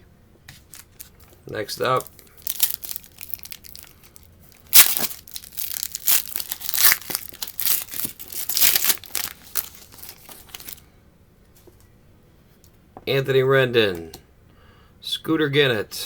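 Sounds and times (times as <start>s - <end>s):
wrapper tearing: 0.6s - 1.2s, 2.0s - 10.8s
wrapper crackling and rustling: 0.6s - 1.3s, 2.0s - 10.8s.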